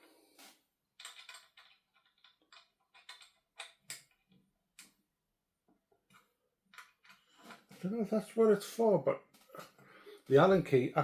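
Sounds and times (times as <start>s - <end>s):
small metal parts clicking: 1.0s - 4.9s.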